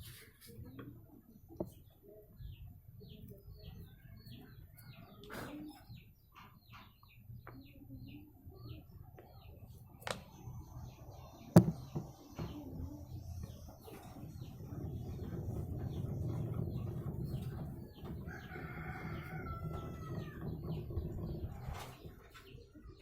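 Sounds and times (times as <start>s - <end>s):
small bird chirping: 0.6s - 23.0s
sharp clicks or knocks: 11.6s - 12.0s.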